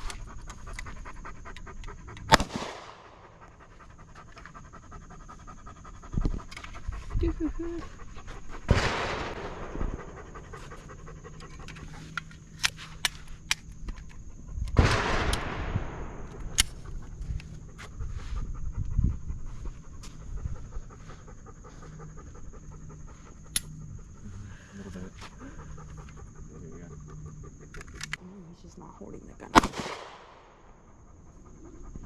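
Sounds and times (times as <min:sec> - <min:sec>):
dog panting: 0:00.0 - 0:02.4, 0:03.0 - 0:13.0, 0:16.7 - 0:28.2, 0:30.8 - 0:32.0
gunshots: 0:02.3 - 0:03.2, 0:08.7 - 0:10.0, 0:14.8 - 0:16.8, 0:29.6 - 0:30.5.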